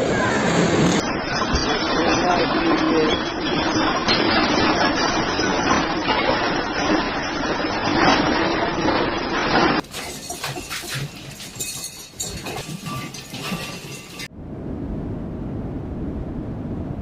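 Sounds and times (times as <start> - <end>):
glass breaking: 1.0 - 14.3
objects clattering and falling: 1.0 - 14.3
scattered knocks and rattles: 1.0 - 14.3.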